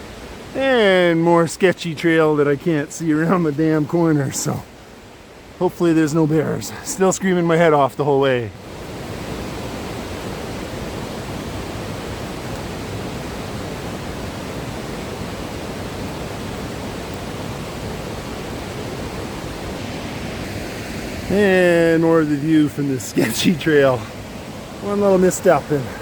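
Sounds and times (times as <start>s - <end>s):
waterfall and rushing creek: 0.0s - 26.0s.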